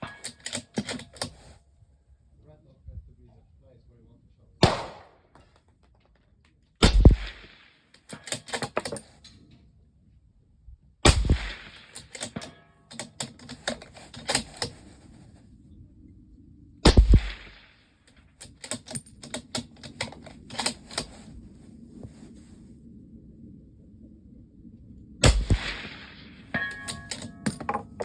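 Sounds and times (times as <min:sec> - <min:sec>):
rifle bolt clicks and clacks: 0:00.0 - 0:01.6, 0:07.4 - 0:09.4, 0:11.2 - 0:14.9, 0:18.1 - 0:21.3, 0:26.6 - 0:28.0
suppressed rifle shots: 0:04.6 - 0:05.4, 0:06.8 - 0:08.5, 0:11.0 - 0:12.6, 0:16.8 - 0:17.8, 0:25.2 - 0:27.1.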